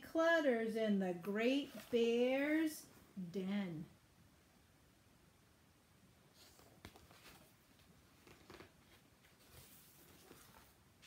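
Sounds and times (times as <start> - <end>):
soft rustles: 1.4 - 3.1, 6.3 - 11.0.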